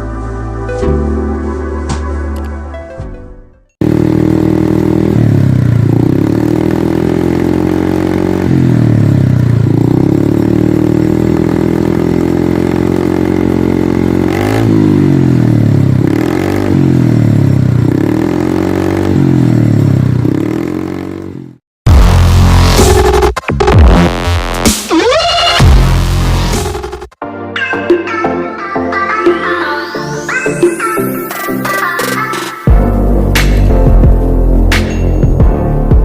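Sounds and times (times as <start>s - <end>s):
scooter engine revving: 3.8s - 21.6s.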